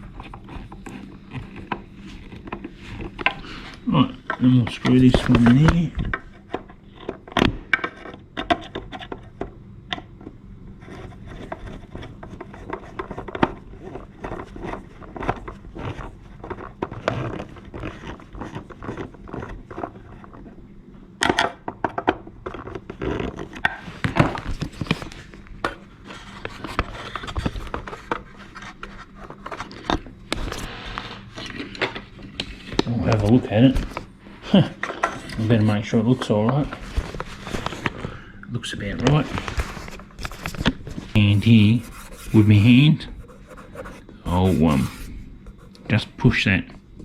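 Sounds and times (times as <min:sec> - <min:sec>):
scrapes clicks and knocks of parts: 0:21.2 - 0:34.1, 0:34.8 - 0:38.2, 0:38.8 - 0:41.3.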